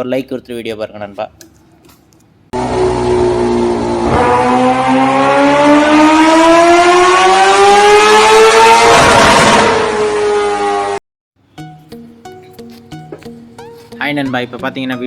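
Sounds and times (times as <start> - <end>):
engine revving: 2.6 - 11.0.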